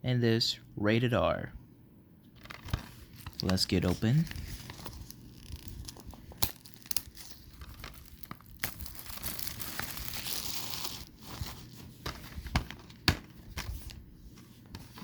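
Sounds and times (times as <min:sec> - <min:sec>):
plastic shrink-wrap tearing: 0:02.4 - 0:11.6.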